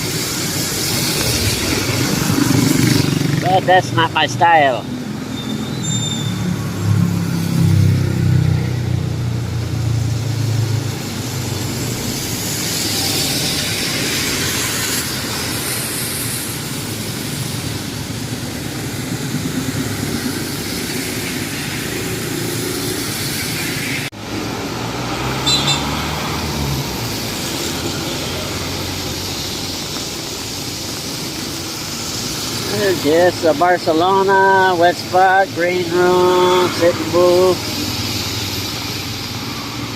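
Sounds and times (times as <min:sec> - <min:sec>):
vehicle passing: 0:00.0 - 0:05.4, 0:06.3 - 0:39.9
traffic hiss on wet road: 0:00.0 - 0:39.9.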